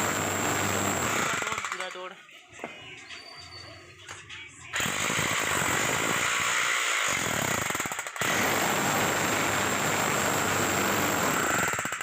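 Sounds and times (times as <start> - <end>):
electric demolition breaker hammering: 0.0 - 1.8, 7.1 - 12.0.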